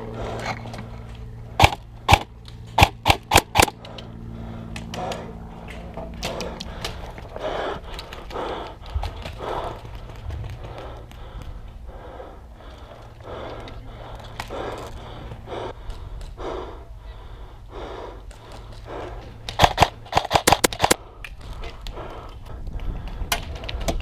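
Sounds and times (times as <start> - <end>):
airsoft gun shots: 1.6 - 3.8, 19.6 - 21.0.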